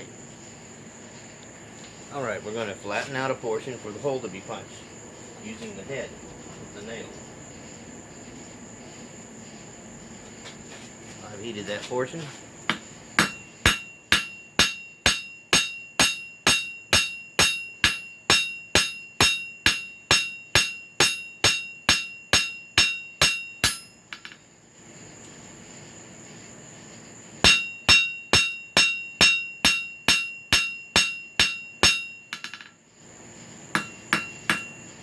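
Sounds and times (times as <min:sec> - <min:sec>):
steady hiss: 0:00.0 - 0:35.0
hammer ringing on hot metal: 0:12.7 - 0:24.4, 0:27.4 - 0:32.8, 0:33.7 - 0:35.0.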